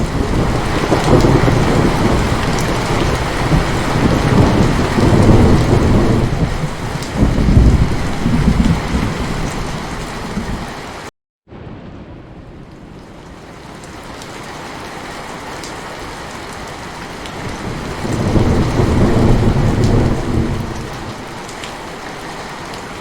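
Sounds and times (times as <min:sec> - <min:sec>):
rolling thunder: 0:00.0 - 0:10.8, 0:11.5 - 0:13.9, 0:17.3 - 0:21.7
heavy rain pouring: 0:00.0 - 0:23.0.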